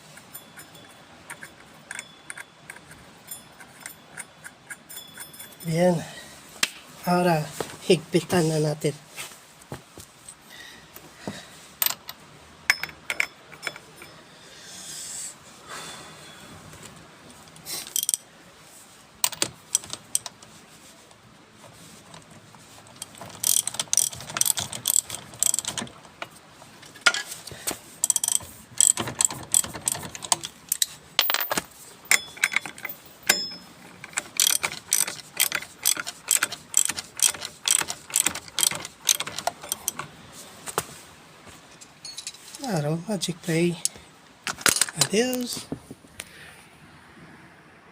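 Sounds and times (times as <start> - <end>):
ratchet clicking: 22.9 - 25.9, 28.0 - 31.4, 32.1 - 40.0.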